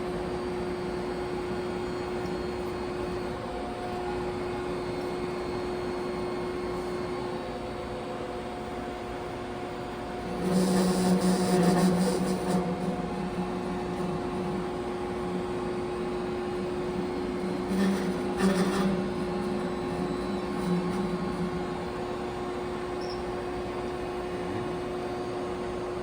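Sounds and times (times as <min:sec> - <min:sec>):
machine tool humming: 0:10.0 - 0:24.4.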